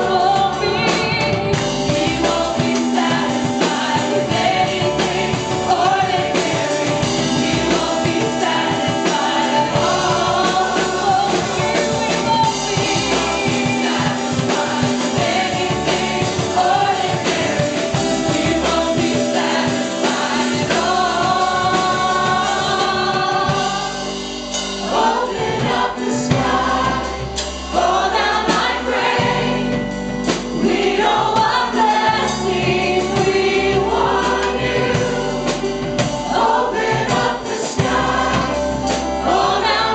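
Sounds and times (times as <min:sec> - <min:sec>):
band accompaniment with bass: 0:00.0 - 0:39.9
choir and congregation singing: 0:00.0 - 0:39.9.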